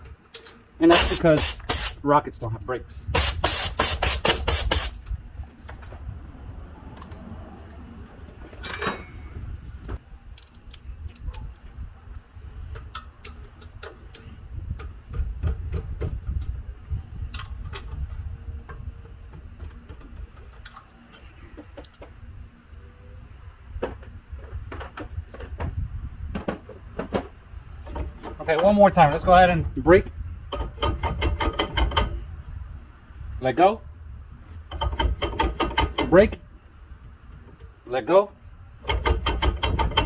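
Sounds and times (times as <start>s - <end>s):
tools and parts clinking: 8.5s - 11.7s.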